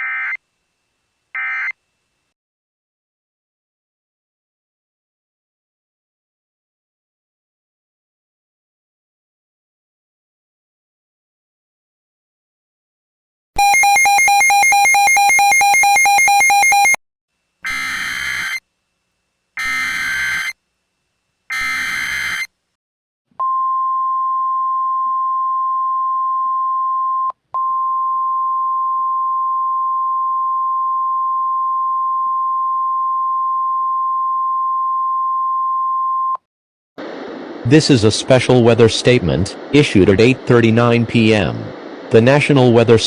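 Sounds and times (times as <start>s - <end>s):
screeching data bursts: 17.6s - 18.6s, 19.6s - 20.6s, 21.5s - 22.5s
harsh electronic buzz: 17.6s - 18.7s, 19.5s - 20.6s, 21.4s - 22.6s
steady high warning tone: 17.6s - 18.7s, 19.6s - 20.6s, 21.5s - 22.6s.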